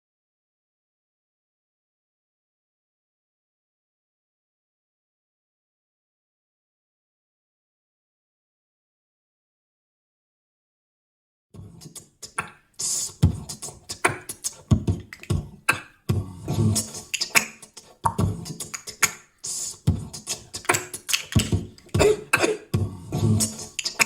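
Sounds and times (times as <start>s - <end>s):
person beatboxing: 11.6s - 24.0s.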